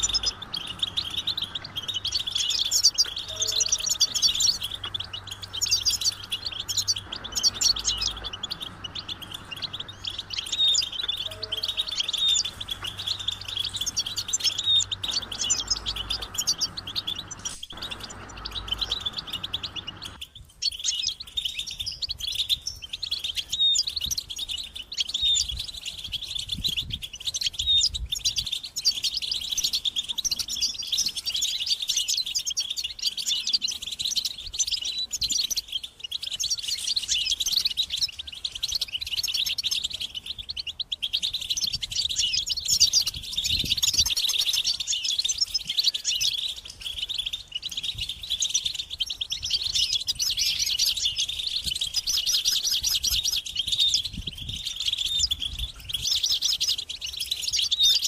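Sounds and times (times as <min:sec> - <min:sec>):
goldfinches twittering: 0:00.0 - 0:20.3.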